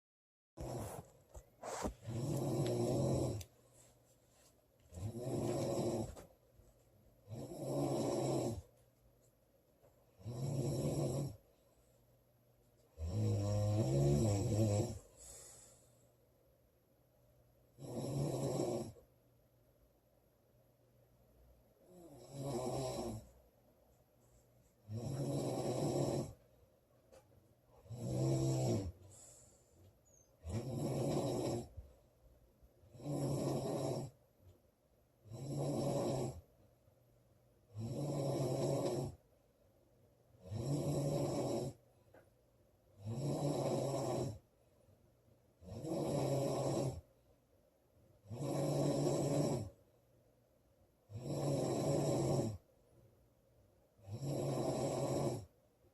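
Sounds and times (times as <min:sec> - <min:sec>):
woman snoring loudly: 0:00.6 - 0:01.0, 0:01.6 - 0:03.5, 0:04.9 - 0:06.2, 0:07.3 - 0:08.6, 0:10.2 - 0:11.4, 0:13.0 - 0:15.1, 0:17.8 - 0:19.0, 0:21.9 - 0:23.3, 0:24.9 - 0:26.4, 0:27.8 - 0:29.0, 0:30.4 - 0:31.7, 0:32.9 - 0:34.2, 0:35.3 - 0:36.4, 0:37.7 - 0:39.2, 0:40.4 - 0:41.8, 0:43.0 - 0:44.4, 0:45.6 - 0:47.1, 0:48.3 - 0:49.8, 0:51.1 - 0:52.6, 0:54.0 - 0:55.5
quiet breathing: 0:00.6 - 0:06.3, 0:13.0 - 0:16.5, 0:27.7 - 0:32.1.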